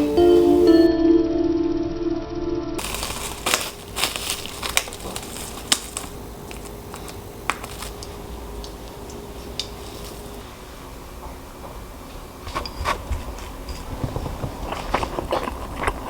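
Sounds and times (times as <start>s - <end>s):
background music: 0.0s - 2.8s
faint steady hum: 0.0s - 16.0s
faint crinkling: 2.8s - 10.5s.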